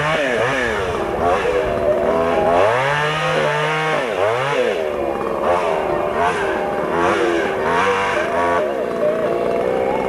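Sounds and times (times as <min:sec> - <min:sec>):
chainsaw engine revving: 0:00.0 - 0:10.0.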